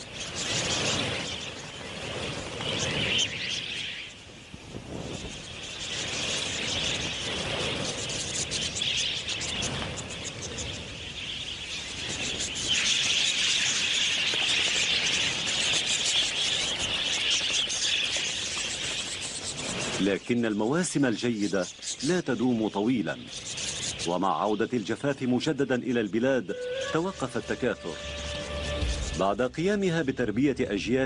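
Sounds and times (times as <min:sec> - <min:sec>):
flock of budgerigars chattering: 0:00.0 - 0:31.0.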